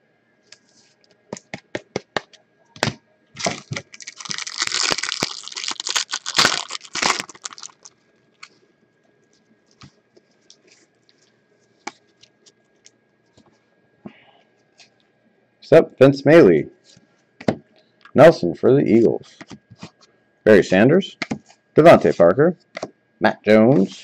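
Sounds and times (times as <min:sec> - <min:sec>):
packaging clicks: 0:03.4 - 0:07.9
wrapper tearing and crinkling: 0:03.4 - 0:08.5.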